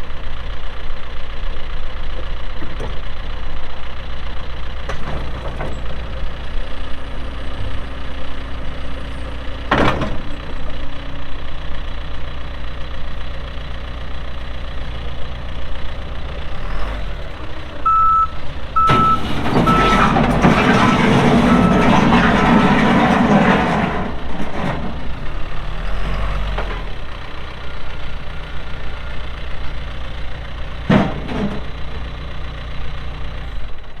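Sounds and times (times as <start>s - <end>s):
diesel engine running: 0.0s - 34.0s
reverse alarm beeping: 17.8s - 20.2s.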